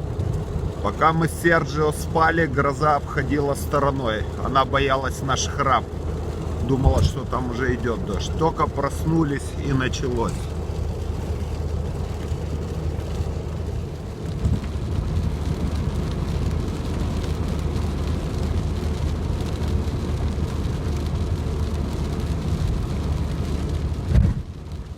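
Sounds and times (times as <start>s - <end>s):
car engine running: 0.0s - 24.9s
rain falling: 0.0s - 24.9s
short thump: 24.1s - 24.4s.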